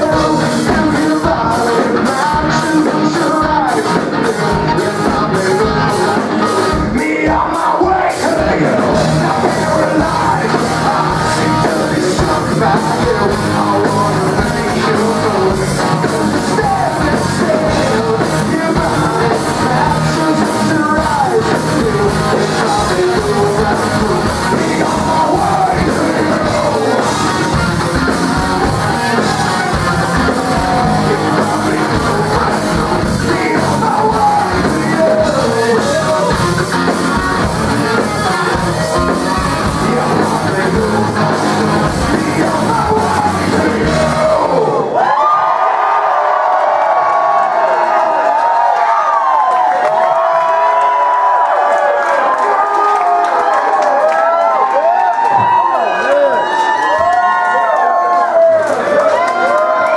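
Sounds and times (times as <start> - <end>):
rock band playing live: 0.0 - 45.1
lead singer singing: 0.0 - 45.3.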